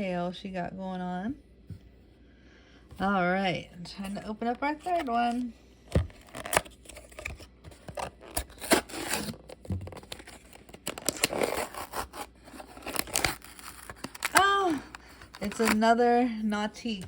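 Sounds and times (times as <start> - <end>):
packaging tearing and crinkling: 6.1 - 16.0.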